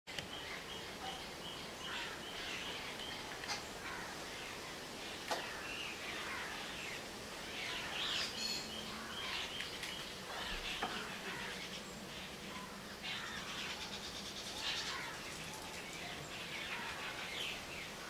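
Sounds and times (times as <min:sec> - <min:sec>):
background hiss: 0:00.1 - 0:18.0
birds chirping: 0:00.1 - 0:18.0.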